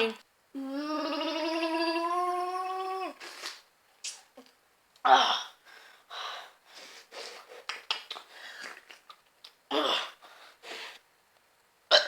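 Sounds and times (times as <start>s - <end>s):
vocal sound falling in pitch: 0.0s - 3.2s
wet mouth noises: 0.9s - 4.5s, 7.3s - 9.6s.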